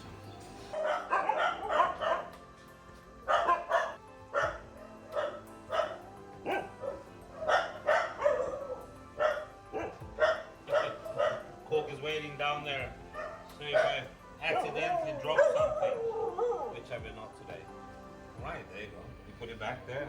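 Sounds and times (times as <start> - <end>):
dog barking: 0.7 - 12.0, 12.9 - 16.9.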